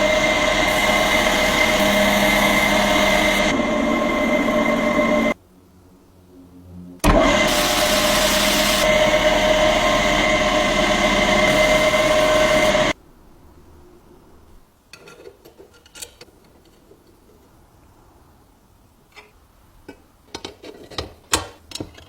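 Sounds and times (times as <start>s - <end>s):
power tool hissing and whining: 0.0s - 5.4s, 7.0s - 13.0s.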